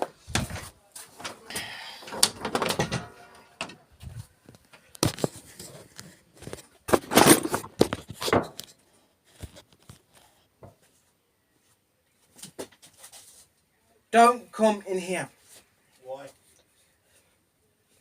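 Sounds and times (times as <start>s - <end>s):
metal parts scraping and clattering: 2.0s - 3.8s, 6.9s - 8.2s.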